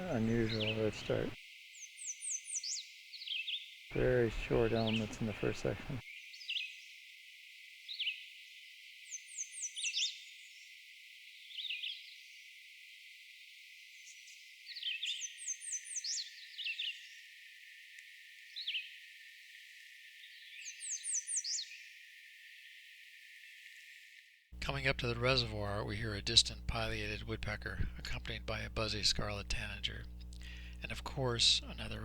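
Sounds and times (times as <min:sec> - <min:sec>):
bird singing high notes: 0:00.0 - 0:01.4.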